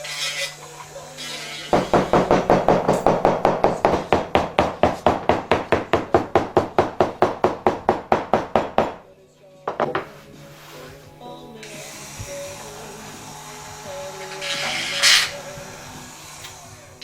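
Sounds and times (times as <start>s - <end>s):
rapid hammering on workpiece: 1.6s - 9.1s.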